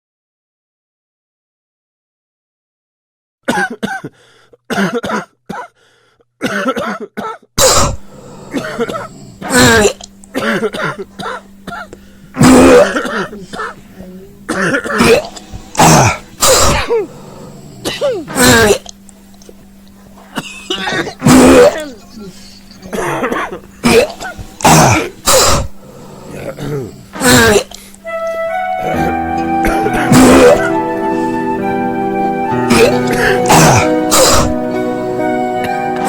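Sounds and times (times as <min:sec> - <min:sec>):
person coughing: 0:03.5 - 0:05.8, 0:06.4 - 0:17.2, 0:17.8 - 0:18.9, 0:20.3 - 0:28.0, 0:28.9 - 0:30.8, 0:32.7 - 0:34.6
throat clearing: 0:06.4 - 0:17.2, 0:17.8 - 0:19.0, 0:20.2 - 0:28.0, 0:28.9 - 0:30.8, 0:32.7 - 0:34.6.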